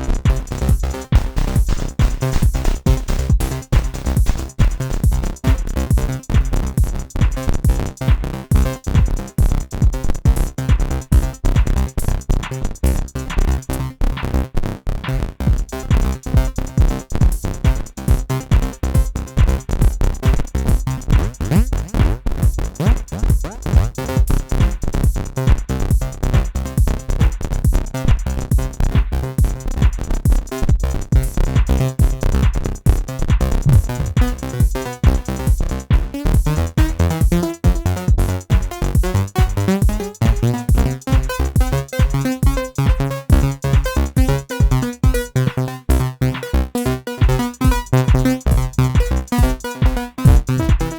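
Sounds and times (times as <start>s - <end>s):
drum machine beat: 0.0s - 14.3s, 15.4s - 50.9s
synth and keyboard parts: 20.4s - 24.8s, 31.0s - 50.9s
held synth chords: 32.9s - 50.9s.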